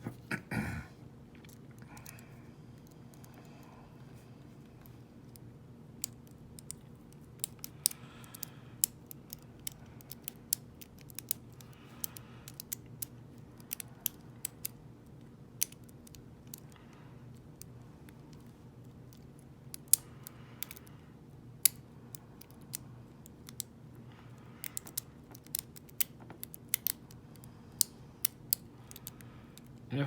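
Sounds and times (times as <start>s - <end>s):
lock pick clicking in lock: 6.0s - 14.8s, 15.6s - 16.7s, 19.2s - 20.8s, 24.6s - 29.8s.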